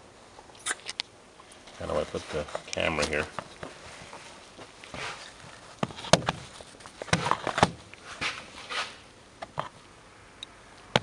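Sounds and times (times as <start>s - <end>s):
short rustles: 1.5s - 9.0s.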